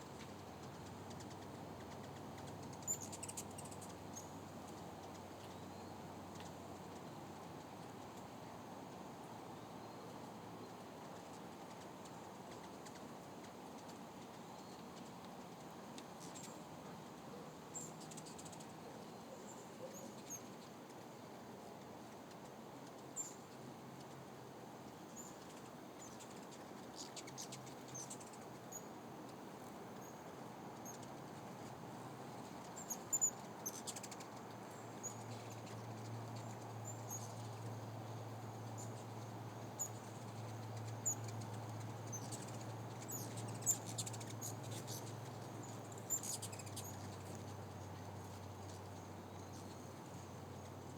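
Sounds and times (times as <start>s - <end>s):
hummingbirds chirping: 1.1s - 4.4s, 17.7s - 18.7s, 25.2s - 28.9s, 32.4s - 50.7s.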